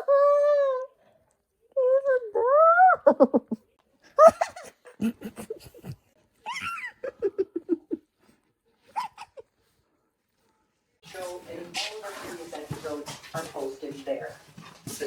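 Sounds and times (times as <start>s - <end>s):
people laughing rhythmically: 4.2s - 8.0s.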